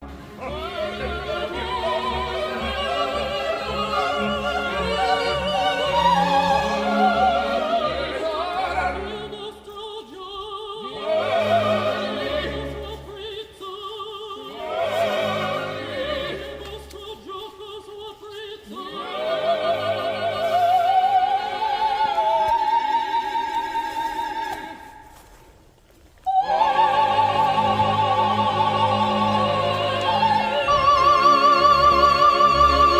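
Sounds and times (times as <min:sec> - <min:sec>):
orchestral accompaniment: 0:00.0 - 0:09.4, 0:10.8 - 0:13.3, 0:14.4 - 0:16.9, 0:26.3 - 0:32.9
operatic singing: 0:00.0 - 0:25.2, 0:26.3 - 0:32.9.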